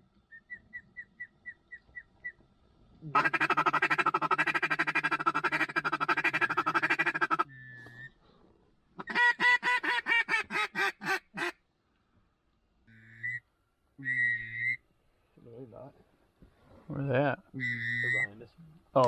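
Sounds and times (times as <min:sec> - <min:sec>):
duck call quacking: 0:03.2 - 0:07.5, 0:09.0 - 0:11.6, 0:12.9 - 0:13.4, 0:14.0 - 0:14.8, 0:17.6 - 0:18.4.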